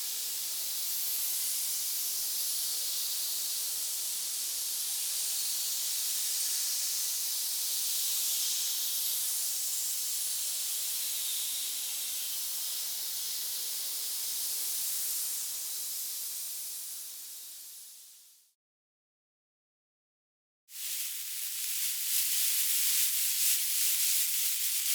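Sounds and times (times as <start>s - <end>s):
snake hissing: 20.8s - 24.9s.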